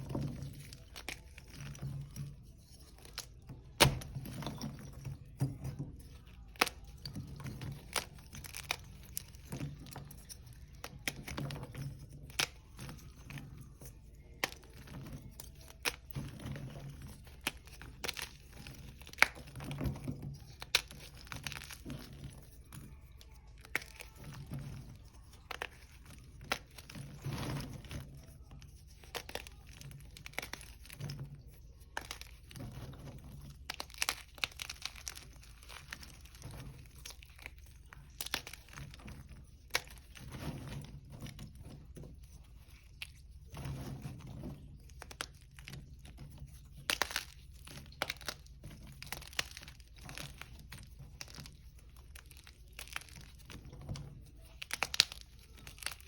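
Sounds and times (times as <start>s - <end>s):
chalk crunching and snapping: 6.2s - 56.0s.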